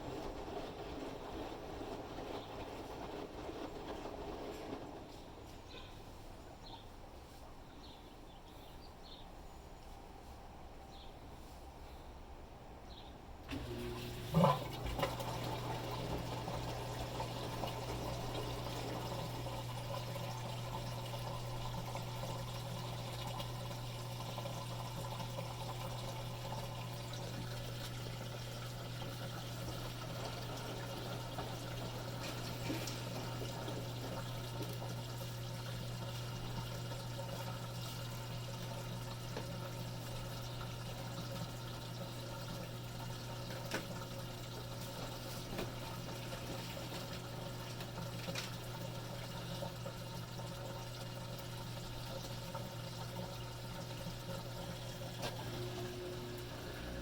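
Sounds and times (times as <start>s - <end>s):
washing machine running: 0.0s - 6.4s, 13.4s - 57.0s
low electric hum: 4.5s - 57.0s.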